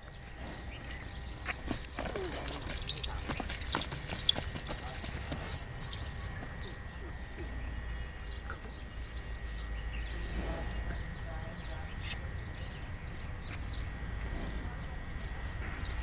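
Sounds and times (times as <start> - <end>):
hooves clopping on hard ground: 0.0 - 6.8.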